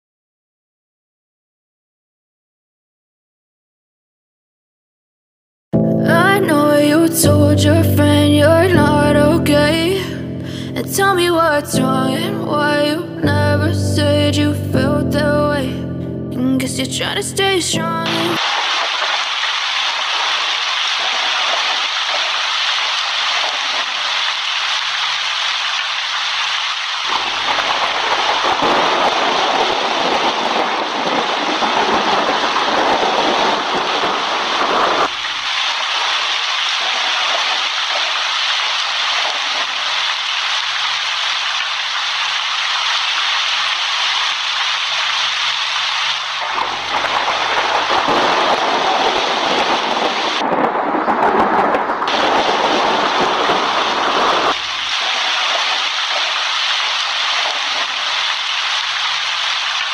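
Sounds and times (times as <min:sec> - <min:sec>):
heavy rain falling: 0:18.0 - 0:59.9.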